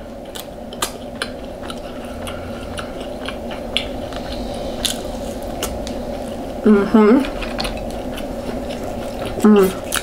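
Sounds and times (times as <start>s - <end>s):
low background hum: 0.0s - 10.0s
chewing clicks and smacks: 0.3s - 5.0s, 7.5s - 10.0s.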